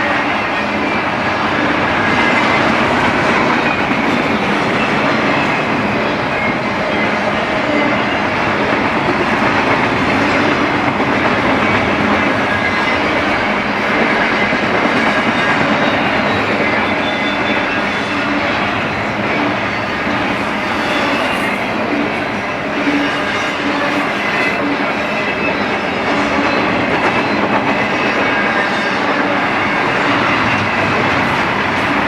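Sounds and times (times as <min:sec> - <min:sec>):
steel wheels on rail: 0:00.0 - 0:32.0.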